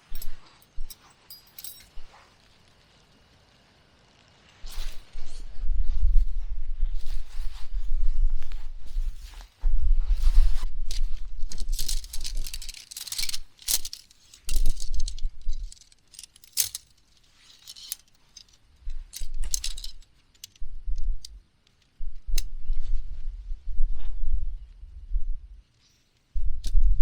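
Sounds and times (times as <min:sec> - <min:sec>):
metal items clinking and rattling: 0:00.0 - 0:02.2, 0:10.9 - 0:20.7.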